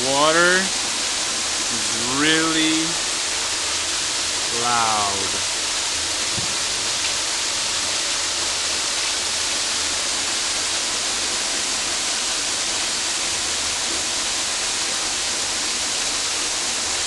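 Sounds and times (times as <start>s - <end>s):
waterfall crashing: 0.0s - 17.0s.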